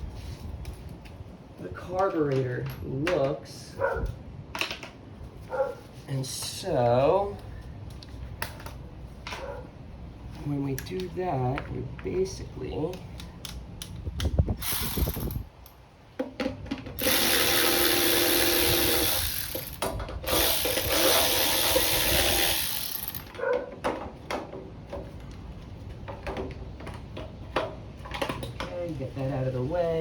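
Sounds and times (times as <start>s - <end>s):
handling clicks and knocks: 12.8s - 17.0s, 23.1s - 28.9s
hand-held power tool running: 14.6s - 15.4s, 17.0s - 23.3s.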